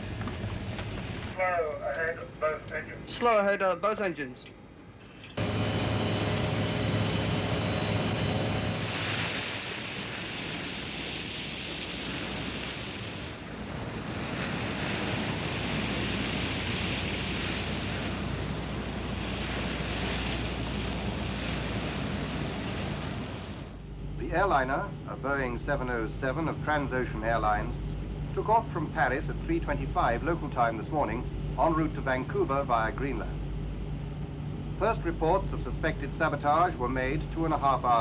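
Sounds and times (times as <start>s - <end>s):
low engine rumble: 4.8s - 38.0s
machine whine: 5.1s - 9.6s
water rushing along hull: 5.4s - 38.0s.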